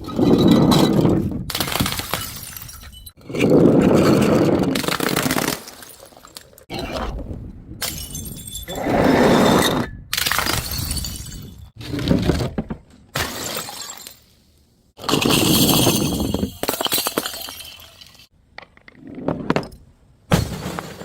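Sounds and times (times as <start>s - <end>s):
glass bottles smashing: 0.2s - 3.2s, 4.8s - 6.7s, 7.8s - 8.8s, 10.2s - 11.8s, 13.2s - 14.4s, 15.0s - 18.3s.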